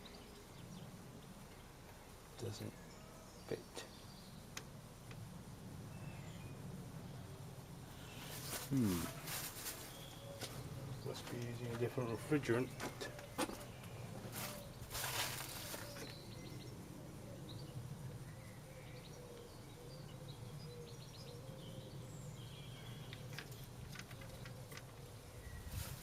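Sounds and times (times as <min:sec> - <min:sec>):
bird chirps: 0:07.9 - 0:26.0
handling rustle: 0:08.1 - 0:16.2, 0:25.7 - 0:26.0.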